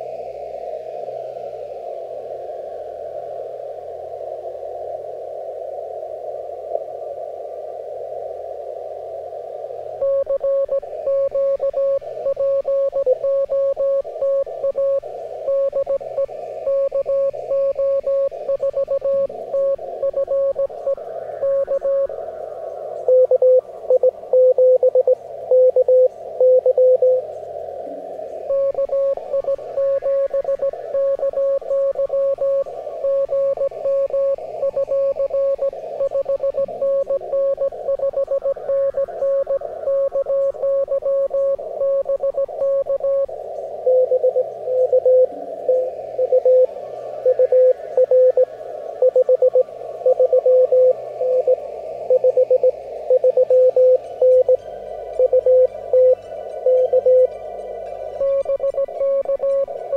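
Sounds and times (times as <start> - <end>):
lower pitched morse signal: 0.0 - 59.9
receiver hiss: 0.0 - 59.9
morse code tone: 10.0 - 22.1, 23.1 - 27.2, 28.5 - 43.3, 43.9 - 46.7, 47.3 - 54.6, 55.2 - 57.4, 58.2 - 59.9.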